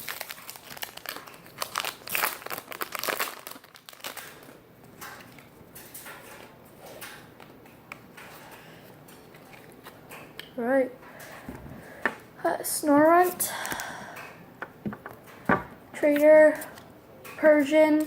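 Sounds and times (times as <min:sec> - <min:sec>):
foil pack crinkling and tearing: 0:00.0 - 0:04.6.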